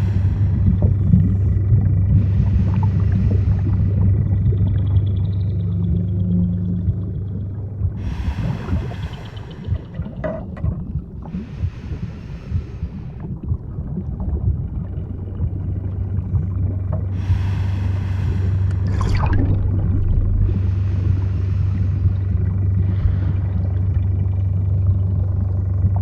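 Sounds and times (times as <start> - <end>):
underwater low rumble: 0.0 - 26.0
hissing: 17.2 - 22.4.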